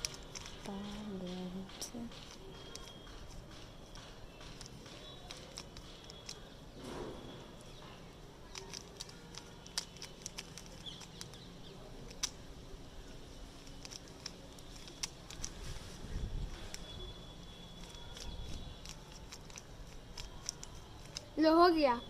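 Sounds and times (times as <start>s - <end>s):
puzzle cube plastic clicks: 0.0s - 1.0s, 2.1s - 6.6s, 8.4s - 12.4s, 13.4s - 15.7s, 17.7s - 21.4s.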